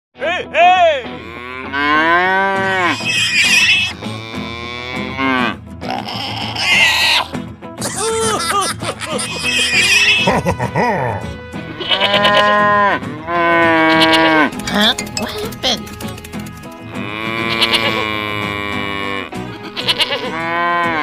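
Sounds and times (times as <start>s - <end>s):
cattle mooing: 1.1s - 5.6s, 11.8s - 14.5s, 17.0s - 21.0s.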